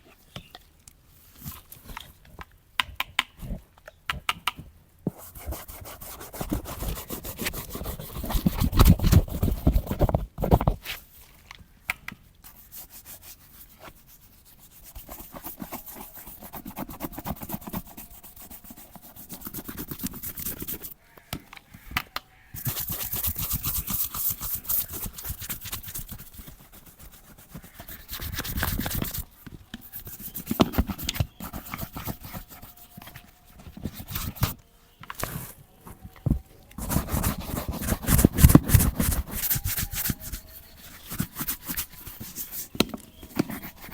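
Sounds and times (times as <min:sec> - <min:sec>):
leather boot being scrubbed: 0:12.8 - 0:21.0, 0:22.6 - 0:29.3, 0:36.8 - 0:43.9.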